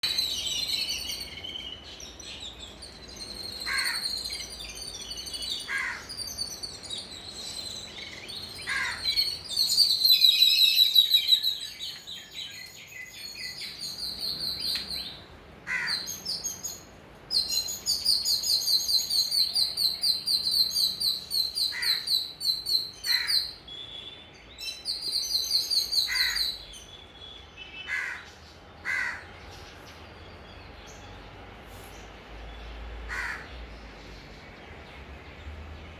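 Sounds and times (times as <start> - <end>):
sparrows chirping: 0.0 - 35.9
crows cawing: 3.6 - 4.1, 5.7 - 6.1, 8.6 - 9.2, 15.6 - 16.1, 21.7 - 22.1, 23.1 - 23.5, 26.1 - 26.6, 27.9 - 29.3, 33.1 - 33.5.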